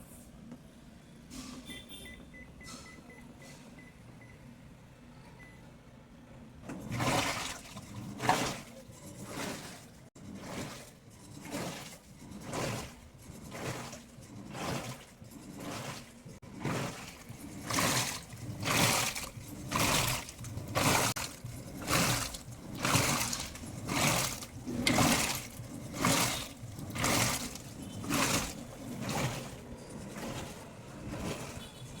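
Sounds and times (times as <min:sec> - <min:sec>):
washing machine sloshing water: 0:06.6 - 0:32.0.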